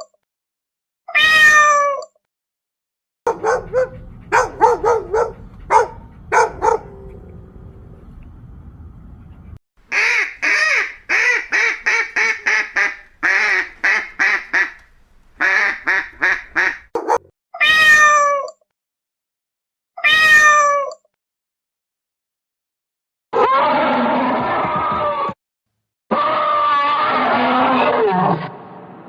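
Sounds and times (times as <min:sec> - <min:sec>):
cat meowing: 0:01.1 - 0:02.0, 0:17.6 - 0:18.5, 0:20.0 - 0:20.9.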